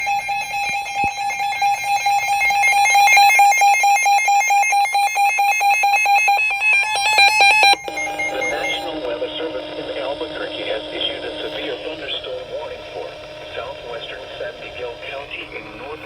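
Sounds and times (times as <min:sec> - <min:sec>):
shrill electronic alert tone: 0:00.0 - 0:11.7.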